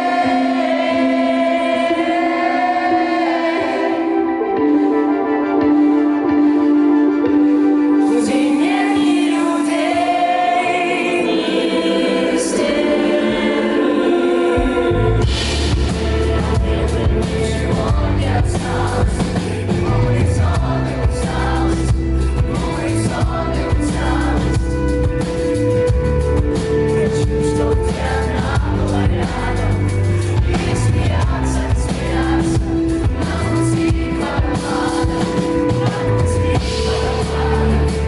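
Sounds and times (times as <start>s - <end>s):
person singing: 0.0s - 38.0s
rock band playing live: 14.6s - 38.0s.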